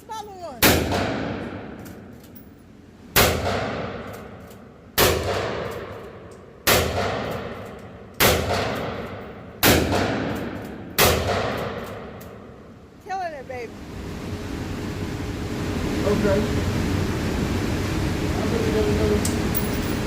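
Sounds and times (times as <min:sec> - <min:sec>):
shotgun shots with echo: 0:00.6 - 0:01.8, 0:03.2 - 0:04.4, 0:05.0 - 0:05.9, 0:06.6 - 0:07.6, 0:08.2 - 0:12.2.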